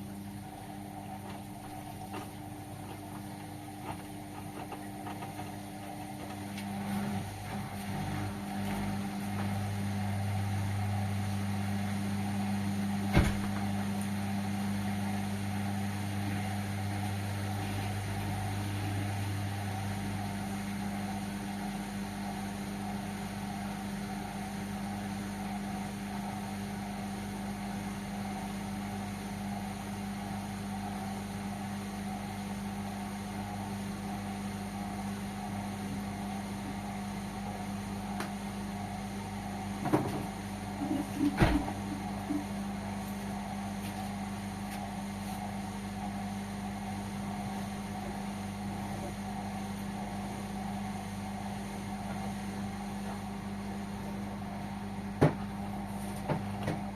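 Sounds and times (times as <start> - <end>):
washing machine motor hum: 0.0 - 56.9.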